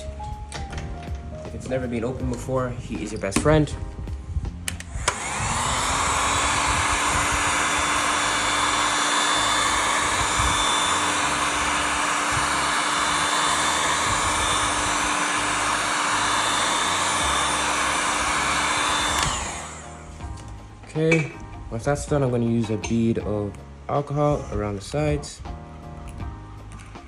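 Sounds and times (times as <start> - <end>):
heat gun blowing: 3.0 - 21.4.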